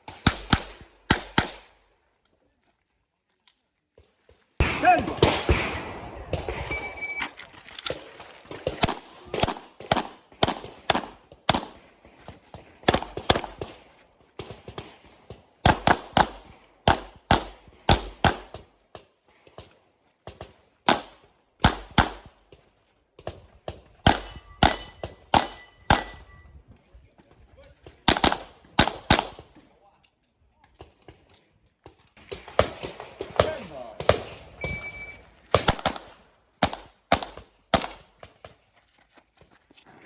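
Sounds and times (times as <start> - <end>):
pistol shots: 4.6 - 7.2, 24.0 - 26.2, 28.1 - 29.4, 32.2 - 38.1.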